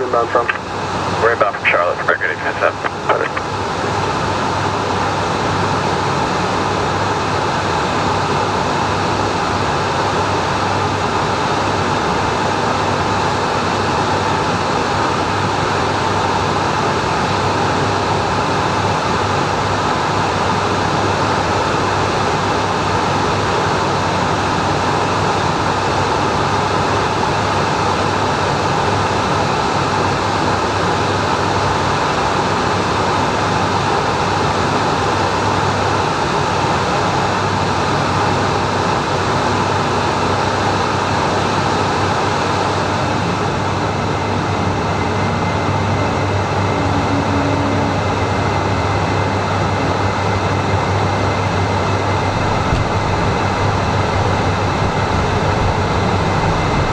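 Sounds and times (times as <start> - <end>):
low hum of jet engines: 0.0 - 56.9
airflow rushing over cabin: 43.6 - 56.9.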